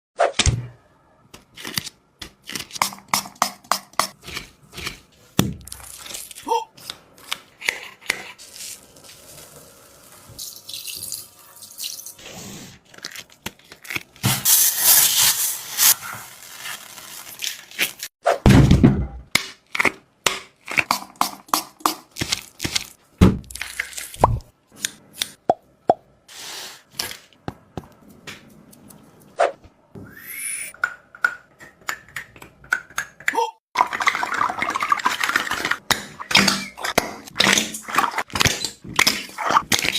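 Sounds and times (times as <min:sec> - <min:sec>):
dense crinkling rustle: 0:15.8 - 0:18.1.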